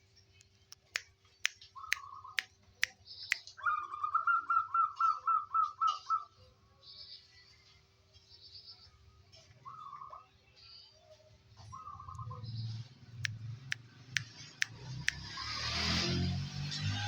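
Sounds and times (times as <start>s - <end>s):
sharp clicks: 0.4s - 1.6s
faint bird chirps: 1.6s - 15.5s.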